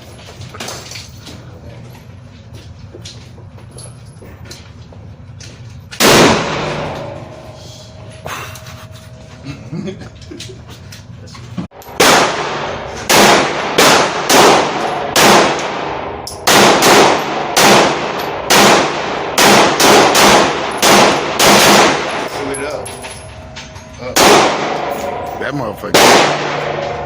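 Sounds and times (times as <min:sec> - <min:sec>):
gunshots with ringing echo: 0:06.0 - 0:07.4, 0:11.9 - 0:22.4, 0:24.1 - 0:27.0.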